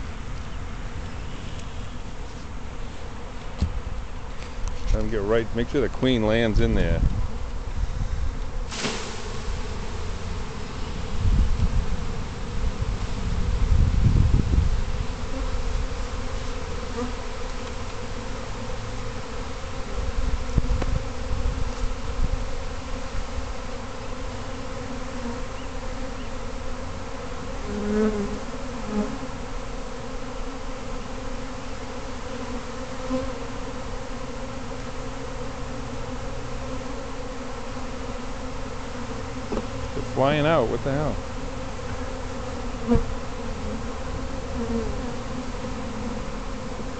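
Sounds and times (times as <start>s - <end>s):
bee swarm buzzing: 0.0s - 46.9s.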